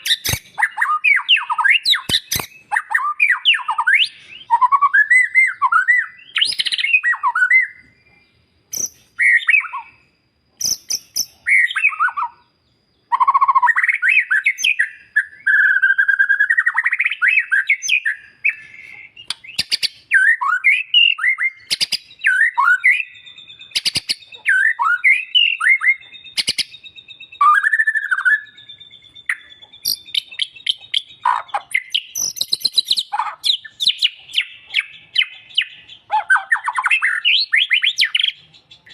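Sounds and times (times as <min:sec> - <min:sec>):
sharp clicking bird notes: 0:00.0 - 0:03.1, 0:17.9 - 0:20.1, 0:21.6 - 0:22.2, 0:26.0 - 0:26.8, 0:29.2 - 0:38.9
bird singing whistled phrases: 0:00.0 - 0:38.9.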